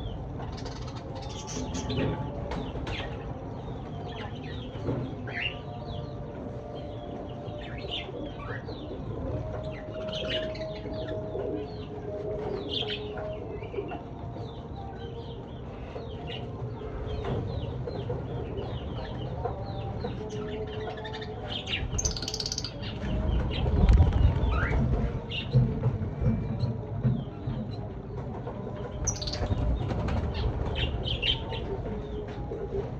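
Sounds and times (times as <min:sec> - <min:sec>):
lovebirds chirping: 0:22.0 - 0:22.9, 0:29.1 - 0:29.6
low rustling rumble: 0:22.7 - 0:25.8.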